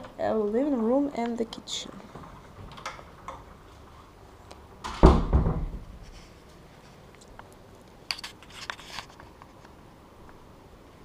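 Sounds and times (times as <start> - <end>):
heavy low thud: 4.9 - 6.0.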